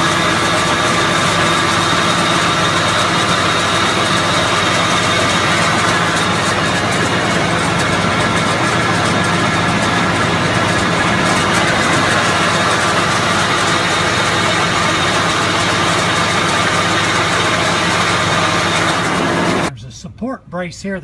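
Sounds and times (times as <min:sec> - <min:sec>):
diesel engine idling: 0:00.0 - 0:19.7.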